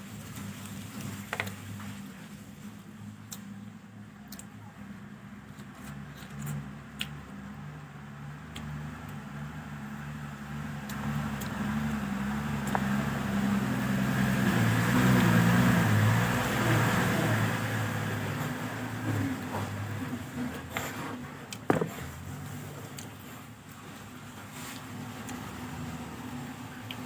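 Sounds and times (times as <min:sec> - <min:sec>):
vehicle engine humming: 0:00.0 - 0:27.0.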